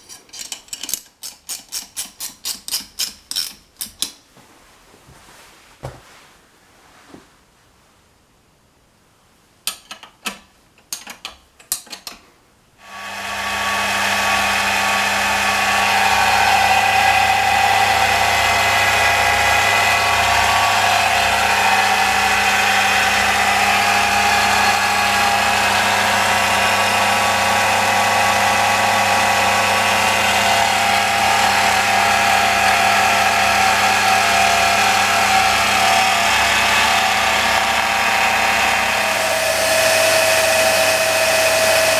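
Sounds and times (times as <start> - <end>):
electric motor humming and whining: 12.8 - 41.9.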